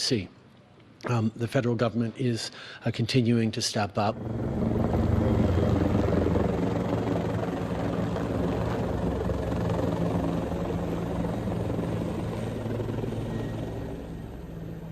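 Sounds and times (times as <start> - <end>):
helicopter rotor drone: 4.0 - 14.9.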